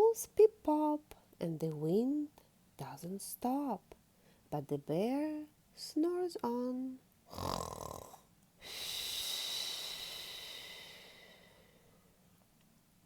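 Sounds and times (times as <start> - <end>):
imitated snore: 7.3 - 8.2.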